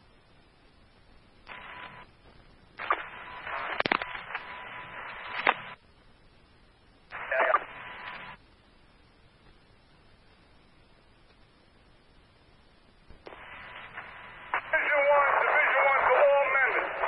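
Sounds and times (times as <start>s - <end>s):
radio static hiss: 0.0s - 17.0s
sharp radio clicks: 1.4s - 2.1s, 2.8s - 5.8s, 7.1s - 8.4s, 13.1s - 17.0s
steady radio tone: 1.5s - 2.1s, 2.8s - 5.8s, 7.1s - 8.4s, 13.2s - 17.0s.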